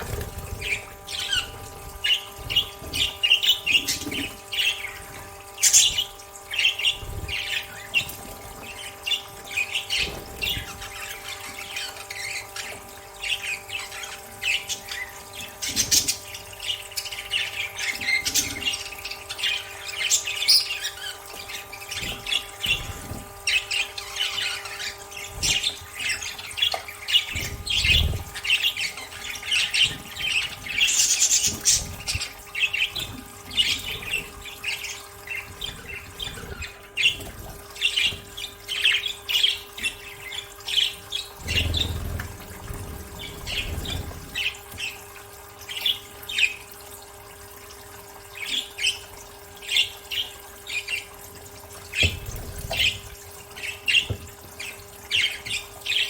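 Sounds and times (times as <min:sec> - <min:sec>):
budgerigars chattering: 0:00.0 - 0:45.0.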